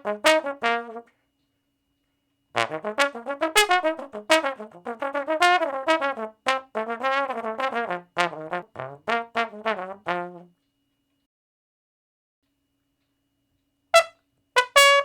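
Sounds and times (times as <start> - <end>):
tuba playing short notes: 0.0 - 1.1, 2.6 - 10.5, 14.0 - 15.0.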